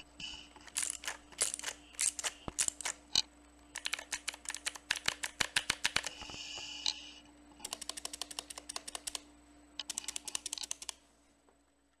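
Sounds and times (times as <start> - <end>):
mechanical keyboard key clicks: 3.8 - 6.2, 7.6 - 9.2, 9.8 - 11.0.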